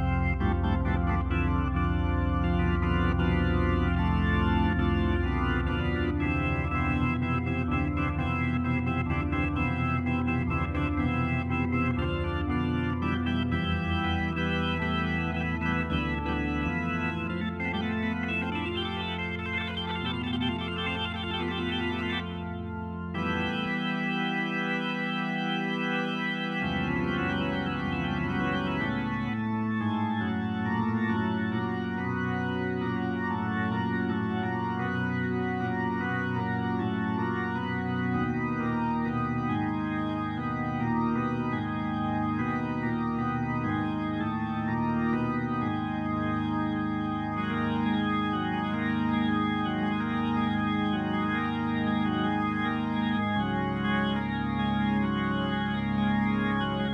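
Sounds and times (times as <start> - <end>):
held keyboard chords: 0.0 - 56.9.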